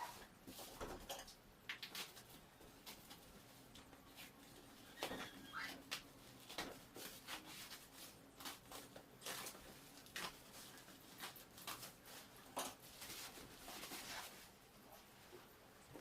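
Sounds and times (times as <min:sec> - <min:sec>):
packaging rustling and crinkling: 0:05.9 - 0:14.6.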